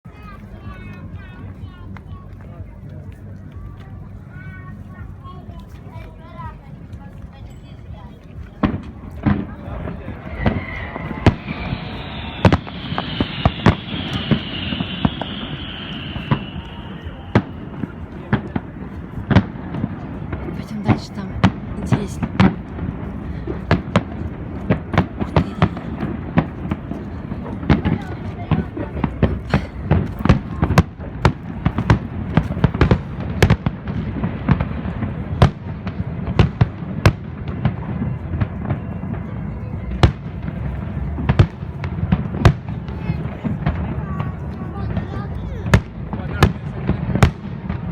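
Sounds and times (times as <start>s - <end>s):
fireworks bangs: 8.6s - 47.9s.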